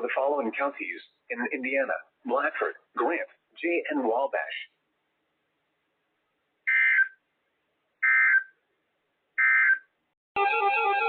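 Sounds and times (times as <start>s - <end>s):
music: 10.4s - 11.0s.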